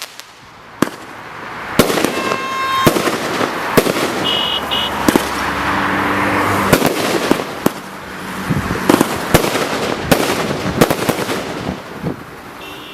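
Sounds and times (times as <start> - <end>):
firework bangs: 0.0 - 12.2
firework crackling: 0.0 - 12.2
firework rushing hiss: 6.4 - 12.2.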